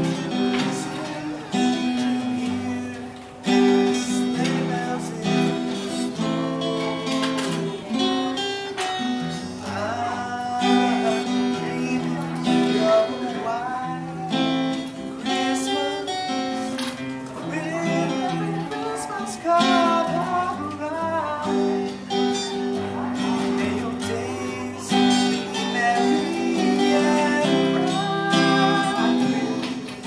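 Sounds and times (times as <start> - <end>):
person singing: 0.0 - 8.4, 9.4 - 30.0
acoustic guitar strumming: 0.0 - 30.0.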